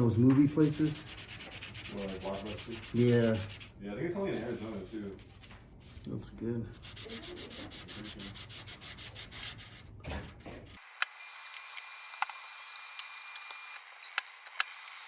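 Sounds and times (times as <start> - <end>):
sandpaper rubbing on metal: 0.5 - 6.0, 6.8 - 10.0.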